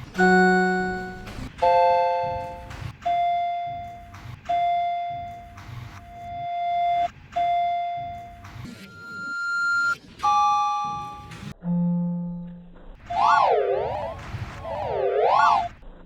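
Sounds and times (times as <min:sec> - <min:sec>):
elevator chime tones: 0:00.1 - 0:02.7, 0:10.3 - 0:12.3.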